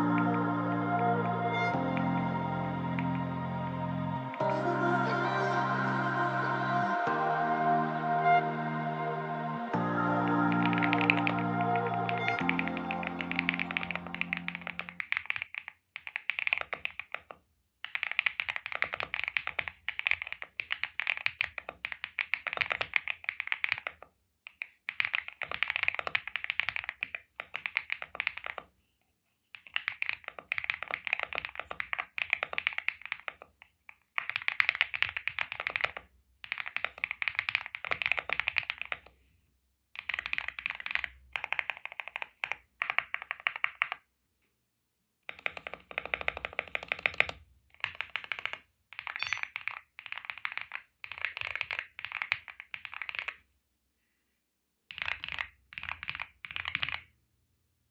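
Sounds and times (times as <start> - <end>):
mechanical keyboard typing: 10.5 - 28.7, 29.6 - 39.1, 40.0 - 44.0, 45.3 - 53.4, 54.9 - 57.1.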